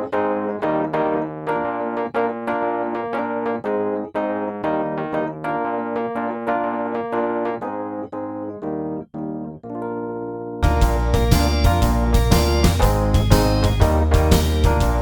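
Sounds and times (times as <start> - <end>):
piano-like keyboard music: 0.0 - 15.0.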